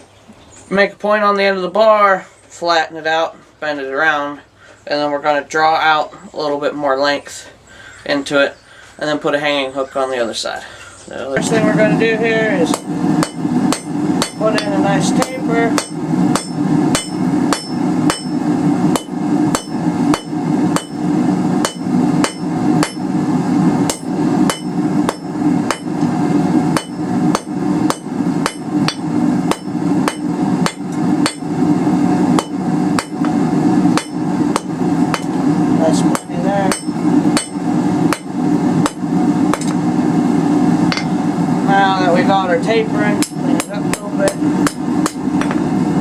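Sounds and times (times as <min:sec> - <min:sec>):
steady low hum: 0:01.4 - 0:46.0
hammer striking steel on anvil: 0:12.6 - 0:23.1, 0:23.9 - 0:26.1, 0:26.7 - 0:31.5, 0:32.4 - 0:35.4, 0:36.1 - 0:39.8, 0:40.9 - 0:41.2, 0:43.1 - 0:45.6.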